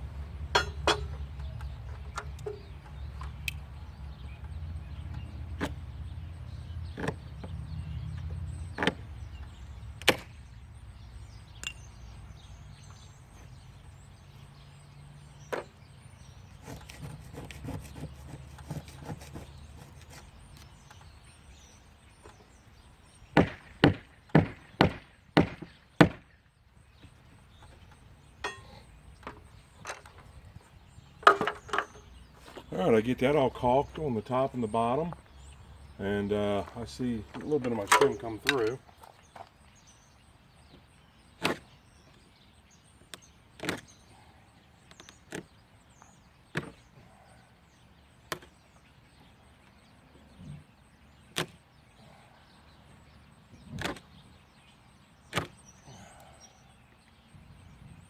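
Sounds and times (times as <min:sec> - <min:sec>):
clicks and knocks on siding: 0:06.9 - 0:09.1, 0:10.0 - 0:10.4, 0:23.3 - 0:26.4, 0:41.4 - 0:41.7, 0:43.1 - 0:44.0, 0:46.5 - 0:46.9, 0:48.3 - 0:48.6, 0:51.3 - 0:51.6, 0:53.7 - 0:54.2, 0:55.3 - 0:55.6
loud knocks: 0:23.4 - 0:26.3.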